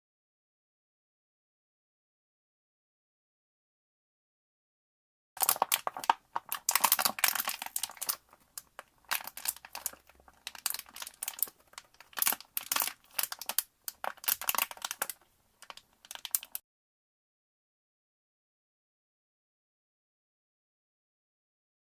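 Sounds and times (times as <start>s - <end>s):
plastic bottle being crushed: 5.4s - 16.6s.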